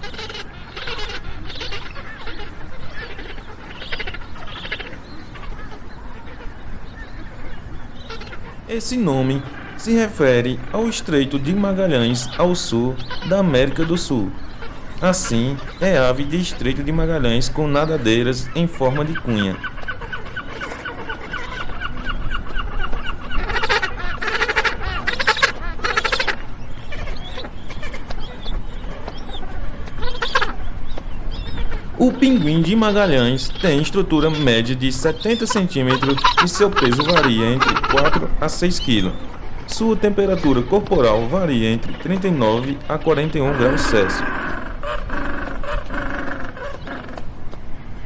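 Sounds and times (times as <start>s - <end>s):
low background noise: 0.0s - 22.3s, 31.4s - 46.0s
penguins calling: 8.7s - 20.3s, 31.6s - 46.7s.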